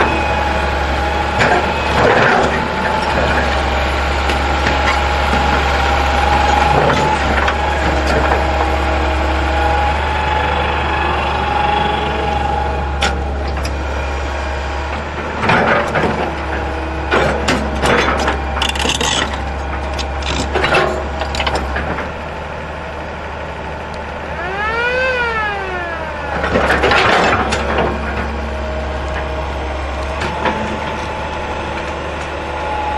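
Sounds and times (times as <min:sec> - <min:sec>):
diesel engine running: 0:00.0 - 0:32.9
rising and falling whine: 0:09.8 - 0:13.0, 0:24.4 - 0:26.4.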